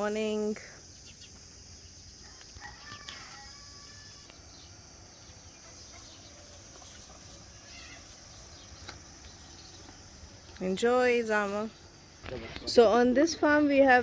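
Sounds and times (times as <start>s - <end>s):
insects chirring: 0.0s - 14.0s
faint animal calls: 5.5s - 9.0s.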